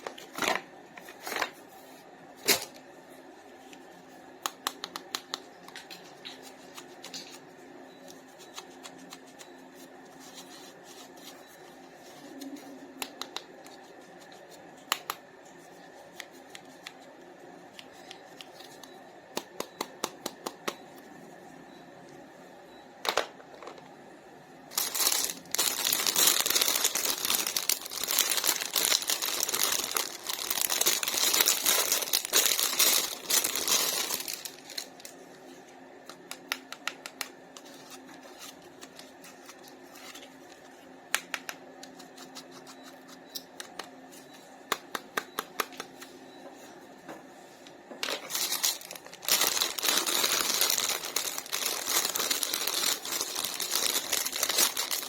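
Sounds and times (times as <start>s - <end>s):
plastic packaging crinkling: 24.7s - 35.2s, 48.0s - 55.0s.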